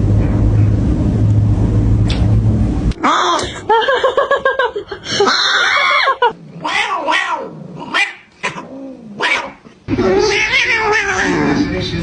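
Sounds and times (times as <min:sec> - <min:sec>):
cat meowing: 0:10.0 - 0:11.6.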